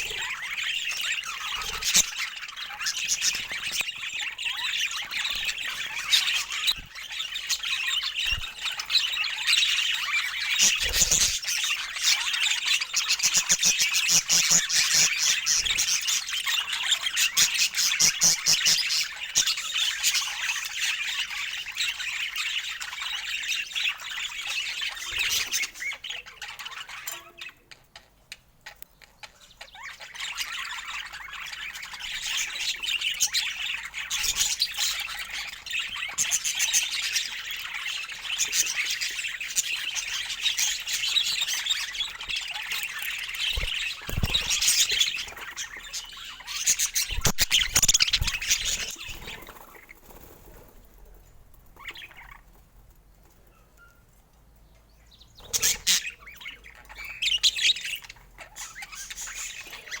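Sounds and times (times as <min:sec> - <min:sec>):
budgerigars chattering and chirping: 0:00.0 - 0:51.0, 0:51.6 - 0:52.7, 0:54.7 - 1:00.0.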